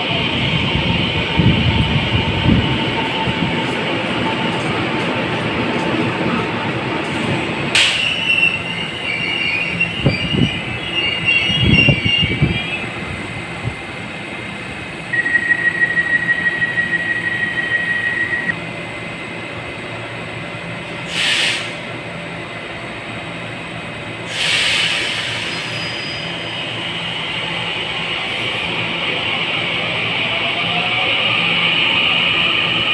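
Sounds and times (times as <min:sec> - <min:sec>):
train steady hum: 0:00.0 - 0:32.9
train wheel and brake squeal: 0:07.7 - 0:14.4, 0:15.0 - 0:18.6, 0:24.3 - 0:27.1
rapid electronic beeping: 0:15.0 - 0:18.6
air hiss: 0:21.1 - 0:21.8, 0:24.3 - 0:25.8.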